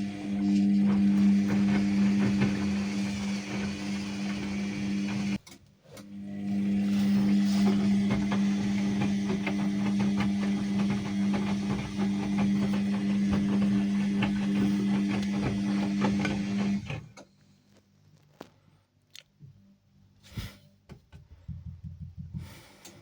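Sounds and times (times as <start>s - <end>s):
washing machine humming: 0.0s - 5.4s, 6.0s - 17.2s.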